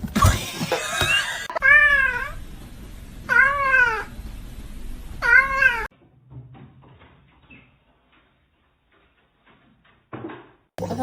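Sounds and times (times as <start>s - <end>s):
cat meowing: 1.6s - 2.4s, 3.3s - 4.1s, 5.2s - 5.9s.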